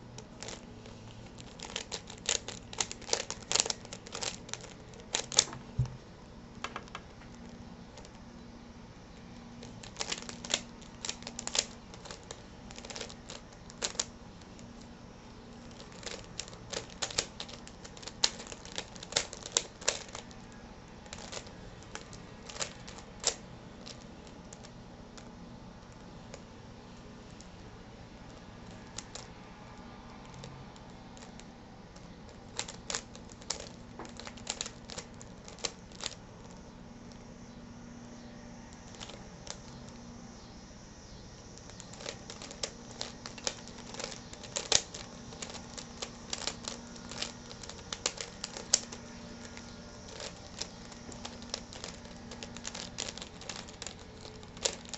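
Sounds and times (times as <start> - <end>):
plastic puzzle clicking: 9.6 - 14.9, 15.6 - 20.4, 21.0 - 25.3, 30.8 - 36.6, 41.6 - 54.9.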